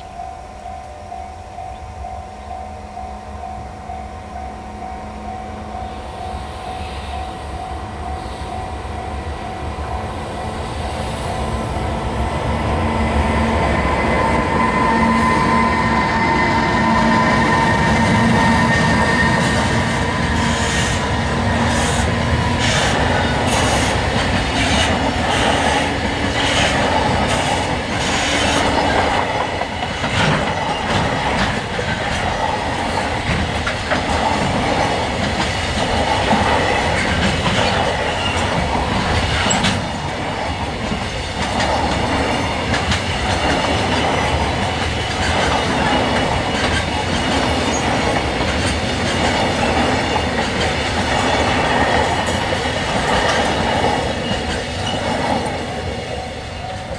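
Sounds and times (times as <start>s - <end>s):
train wheels clacking over rail joints: 11.3s - 56.9s.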